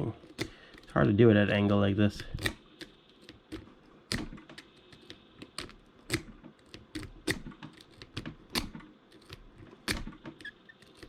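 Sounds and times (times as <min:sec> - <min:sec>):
lock pick clicking in padlock: 0:02.2 - 0:11.0.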